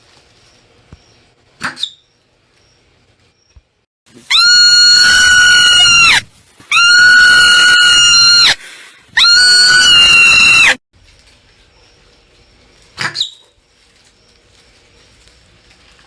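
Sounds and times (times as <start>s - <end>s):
marmot alarm screams: 4.3s - 8.6s, 9.2s - 10.8s.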